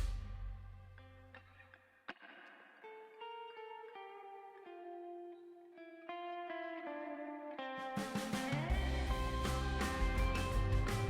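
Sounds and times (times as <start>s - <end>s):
plucked guitar melody: 0.9s - 11.0s.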